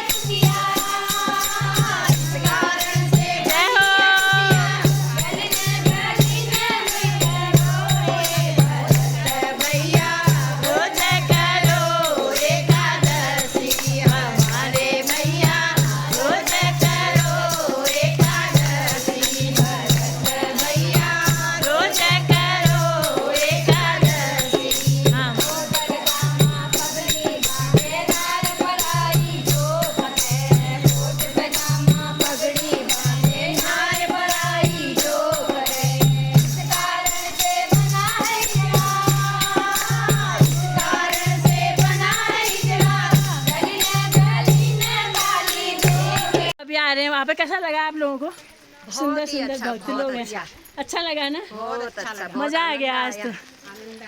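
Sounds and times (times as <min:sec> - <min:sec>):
fast rattling jingle: 0:00.0 - 0:46.6
devotional song with voices: 0:00.0 - 0:54.0
low drum beat: 0:00.2 - 0:28.1, 0:37.7 - 0:46.5.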